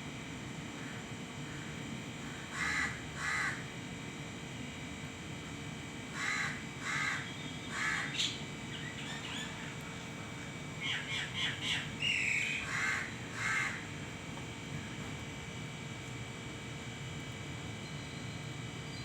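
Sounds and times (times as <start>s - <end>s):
crow cawing: 0.8s - 3.6s, 6.1s - 8.4s, 10.9s - 13.9s
small birds chirping: 7.2s - 9.9s, 10.8s - 12.6s.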